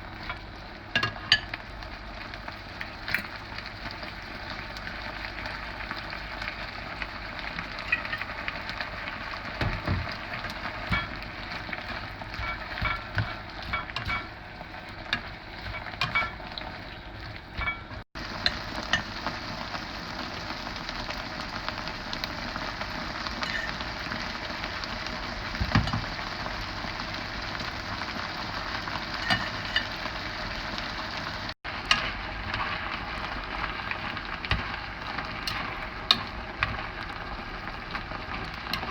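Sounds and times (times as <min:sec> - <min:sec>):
noodles sizzling in a pan: 0:00.0 - 0:38.9
spatula scraping and tapping pan: 0:07.6 - 0:08.5, 0:09.6 - 0:19.1, 0:23.3 - 0:23.9, 0:25.5 - 0:26.2, 0:29.1 - 0:30.0.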